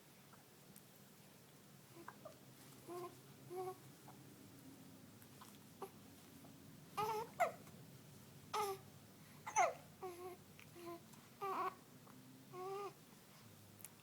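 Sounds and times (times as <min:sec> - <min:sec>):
newborn baby squeaking and whimpering: 0:07.0 - 0:07.7, 0:08.5 - 0:08.8, 0:09.5 - 0:10.4, 0:11.4 - 0:11.8.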